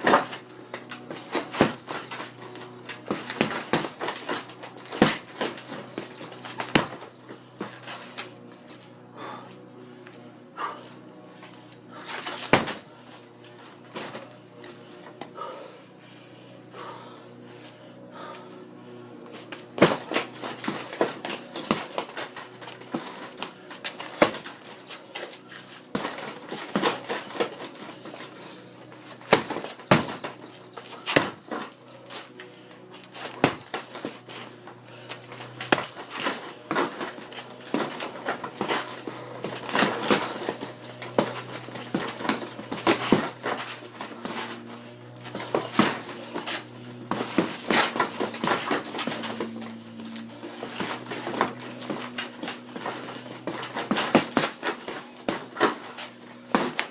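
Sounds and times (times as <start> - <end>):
knocks and clatters: 32.8 - 56.9.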